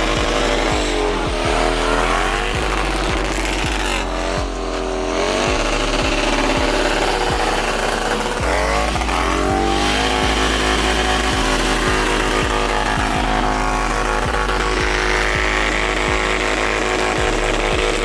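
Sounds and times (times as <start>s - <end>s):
low thumping beat: 0.0s - 18.0s
motorcycle engine revving: 0.0s - 18.0s.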